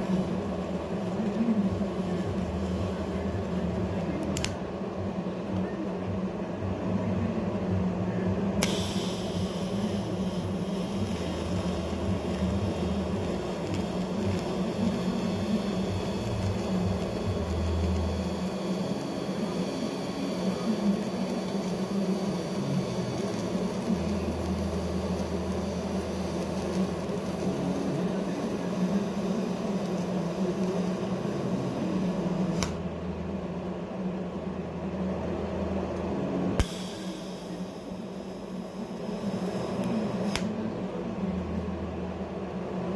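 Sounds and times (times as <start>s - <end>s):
welding arc hissing: 0.0s - 4.6s, 8.6s - 32.9s, 36.6s - 40.6s
machine hum: 0.0s - 42.9s
arc strike click: 4.2s - 4.6s, 8.6s - 10.0s, 32.5s - 32.9s, 36.6s - 37.8s, 39.8s - 40.6s.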